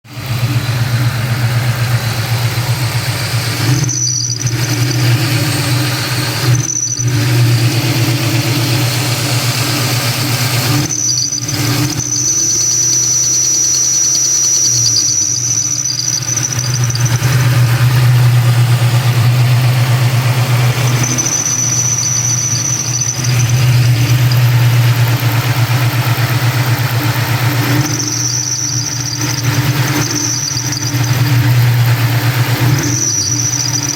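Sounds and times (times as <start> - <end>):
car engine running: 0.0 - 33.9
high-pitched belt squeal: 0.2 - 33.9.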